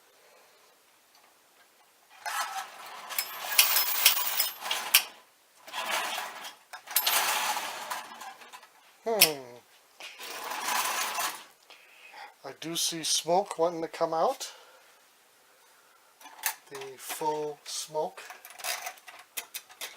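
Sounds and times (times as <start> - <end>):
toy train wheels clattering: 3.1 - 5.1.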